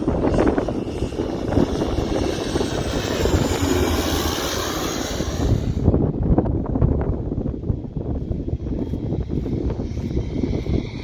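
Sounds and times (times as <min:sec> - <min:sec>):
airliner engines rumbling and whining: 0:00.0 - 0:11.0.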